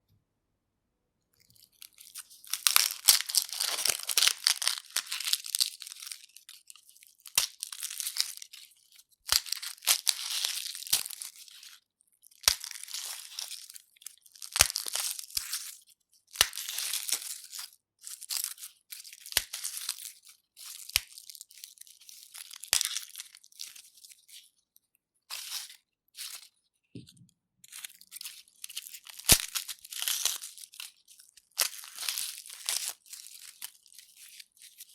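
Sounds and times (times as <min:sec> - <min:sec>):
garlic skins crackling and tearing: 0:01.4 - 0:24.3, 0:27.7 - 0:34.9.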